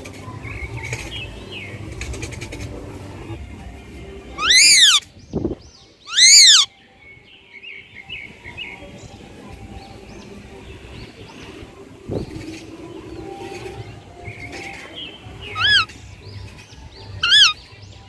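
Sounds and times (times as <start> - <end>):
parrot screeching: 4.4 - 5.0, 6.1 - 6.7, 15.5 - 15.9, 17.2 - 17.6
parrot chirps and chatter: 4.4 - 5.1, 6.1 - 6.7, 12.4 - 17.7.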